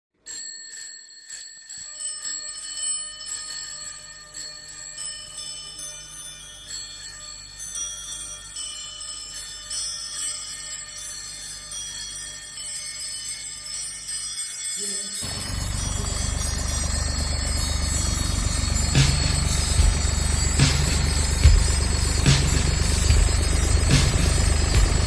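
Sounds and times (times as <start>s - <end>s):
bells ringing: 0.2s - 25.0s
low steady hum: 15.2s - 25.0s.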